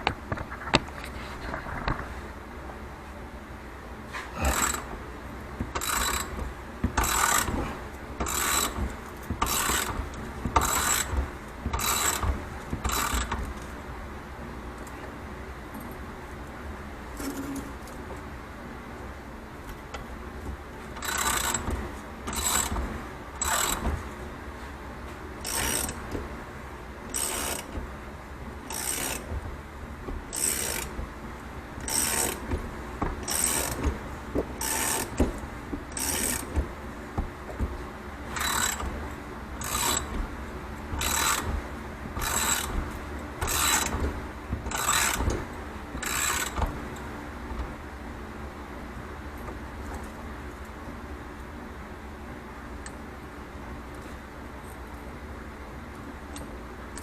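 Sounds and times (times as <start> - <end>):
hand tool ratcheting: 21.0 - 22.8, 23.4 - 23.8, 25.4 - 26.0, 27.1 - 27.8, 28.7 - 29.3, 30.3 - 31.0, 31.8 - 32.6, 33.2 - 34.0, 34.6 - 35.3, 35.9 - 36.6, 38.4 - 39.0, 39.6 - 40.2, 41.0 - 41.6, 42.2 - 42.8, 43.4 - 44.1, 44.7 - 45.4, 46.0 - 46.7.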